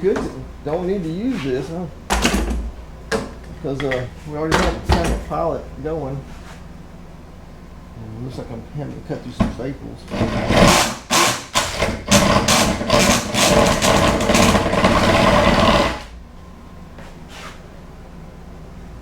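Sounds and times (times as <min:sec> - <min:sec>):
power drill boring into wood: 0:10.1 - 0:16.1.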